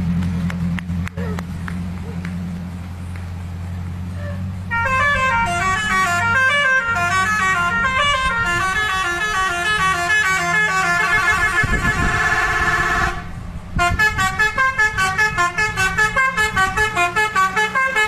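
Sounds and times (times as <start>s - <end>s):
low engine hum: 0.0s - 18.0s
bus horn playing melodic notes: 4.7s - 18.0s.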